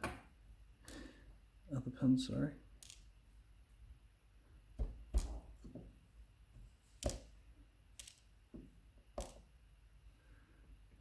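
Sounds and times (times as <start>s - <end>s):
tweezers and lock pins clicking: 2.8s - 3.1s.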